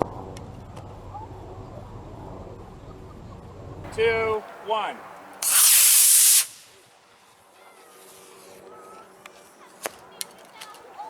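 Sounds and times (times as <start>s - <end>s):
rocket motor rushing hiss: 5.4s - 6.9s.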